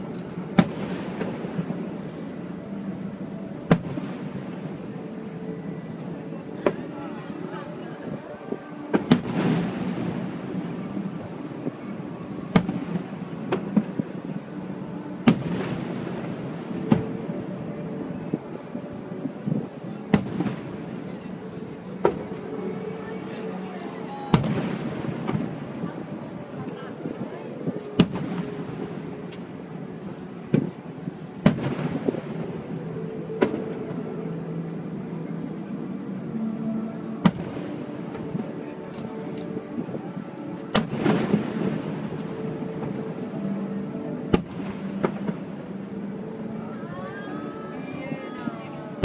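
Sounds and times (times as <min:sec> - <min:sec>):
fireworks bangs: 0:08.9 - 0:17.5, 0:19.4 - 0:21.1, 0:24.3 - 0:32.8, 0:40.7 - 0:43.6.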